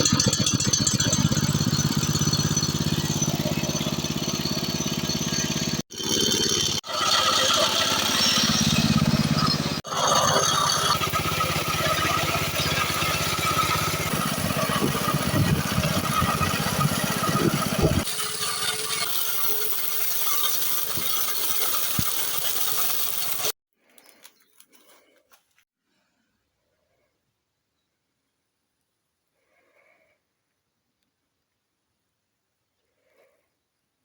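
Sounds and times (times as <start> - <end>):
walk-behind tractor engine running: 0.0 - 23.6.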